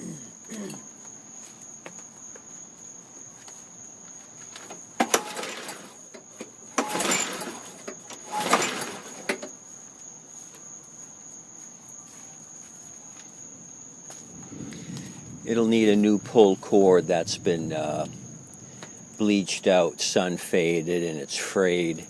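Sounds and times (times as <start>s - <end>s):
crickets chirping: 0.0s - 22.0s
recoil starter whirring crank: 5.0s - 6.0s, 6.7s - 9.5s.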